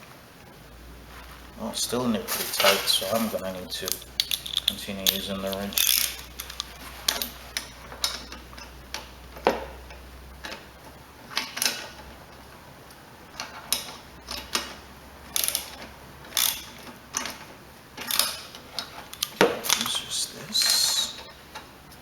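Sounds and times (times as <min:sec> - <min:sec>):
ratchet wrench clicking: 0:03.8 - 0:07.3, 0:16.3 - 0:16.7.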